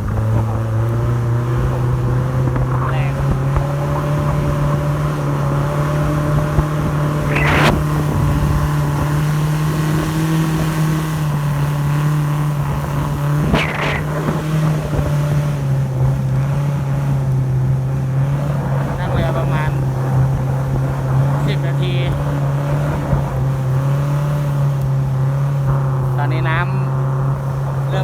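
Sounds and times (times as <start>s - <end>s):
speedboat engine hum: 0.0s - 28.0s
short noisy bursts: 7.2s - 8.5s, 13.4s - 14.8s.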